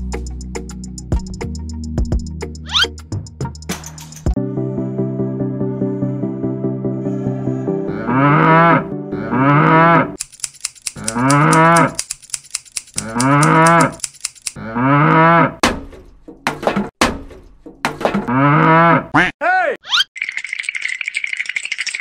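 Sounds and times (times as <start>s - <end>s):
cattle mooing: 7.4s - 10.2s, 11.0s - 12.0s, 13.0s - 14.0s, 14.6s - 15.6s, 18.3s - 19.3s
fast even clicking: 10.2s - 14.6s.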